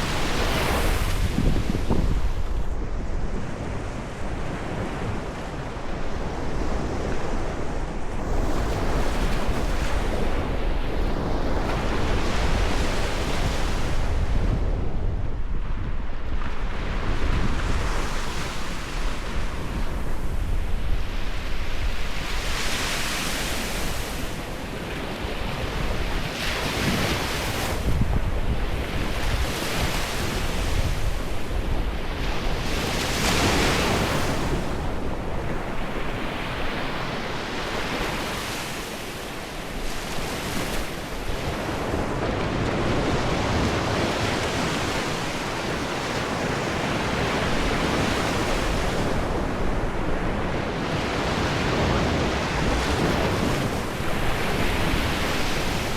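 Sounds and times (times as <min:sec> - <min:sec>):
waves breaking ashore: 0:00.0 - 0:55.9
wind rumbling on microphone: 0:00.0 - 0:55.9.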